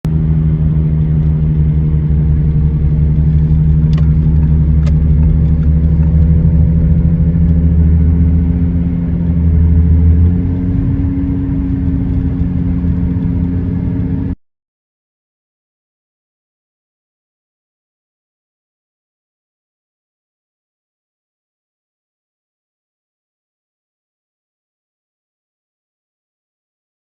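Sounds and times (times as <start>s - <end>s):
wheel bearing drone: 0.1s - 14.4s.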